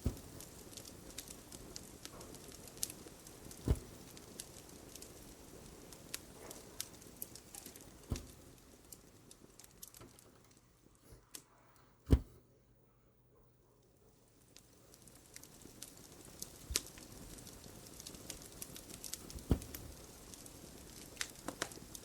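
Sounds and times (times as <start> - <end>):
dull thumps: 0.0 - 0.5, 3.6 - 4.2, 7.8 - 8.6, 12.1 - 12.4, 19.3 - 20.2
fireplace crackling: 0.0 - 12.4, 13.7 - 22.0.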